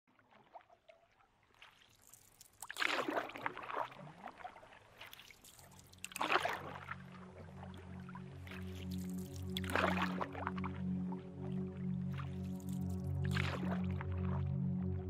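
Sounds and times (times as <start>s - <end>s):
music with low sustained notes: 5.4s - 15.0s.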